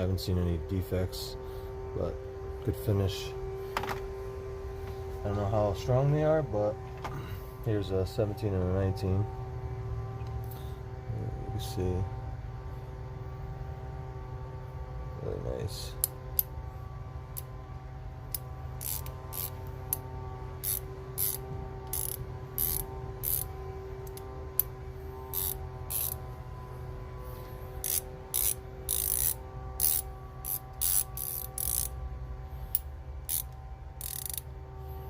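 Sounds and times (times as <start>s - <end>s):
steady low hum: 0.0s - 35.0s
ratcheting wrench clicking: 18.3s - 19.6s, 20.6s - 23.5s, 25.3s - 26.2s, 27.8s - 31.9s, 32.7s - 34.5s.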